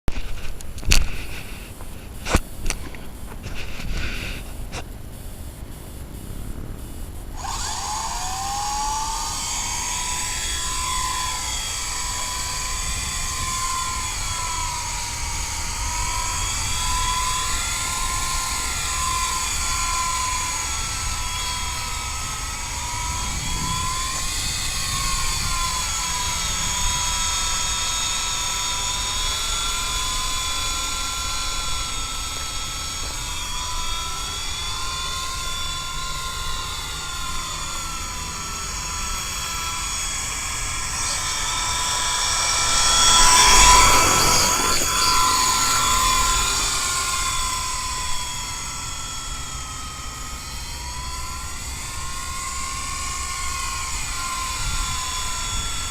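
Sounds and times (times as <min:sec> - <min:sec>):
toy helicopter motor whine: 0:00.0 - 0:55.9
wind rumble on microphone: 0:22.9 - 0:27.2.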